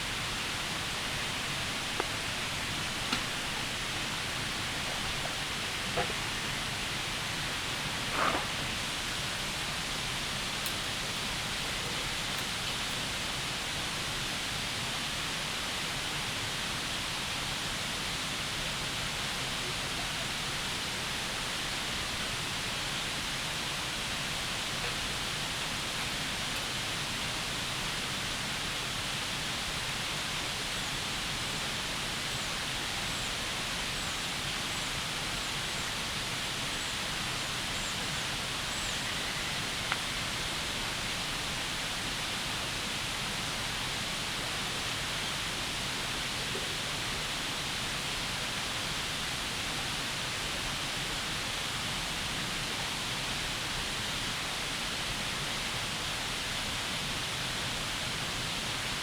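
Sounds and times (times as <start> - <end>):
river rushing: 0.0 - 10.2
faint bird chirps: 37.6 - 40.4.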